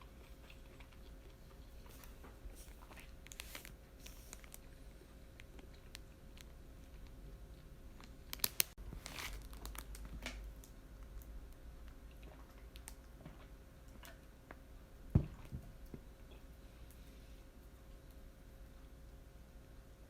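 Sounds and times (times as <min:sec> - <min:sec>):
crunchy chewing: 0:00.0 - 0:11.2.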